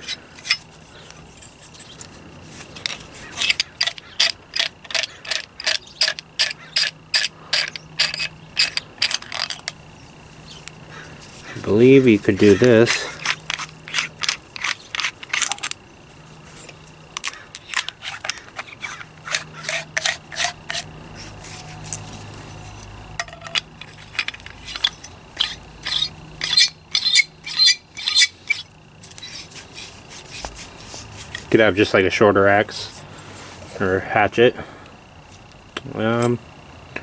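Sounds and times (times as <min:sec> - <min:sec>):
metal threads ticking and scraping: 0:02.8 - 0:09.9, 0:12.4 - 0:15.8, 0:16.7 - 0:20.9, 0:23.2 - 0:30.5.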